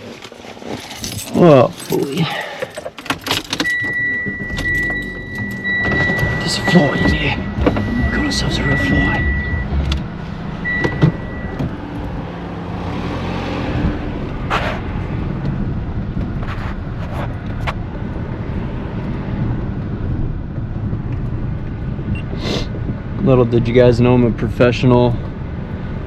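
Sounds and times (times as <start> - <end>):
car engine and road rumble: 0.0 - 26.0
short high beep: 3.7 - 9.8.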